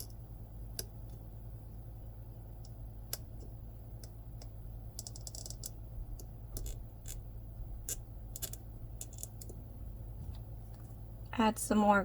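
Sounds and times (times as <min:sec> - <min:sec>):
low steady hum: 0:00.0 - 0:12.0
plastic nail tips clicking: 0:04.0 - 0:07.2, 0:07.8 - 0:09.6.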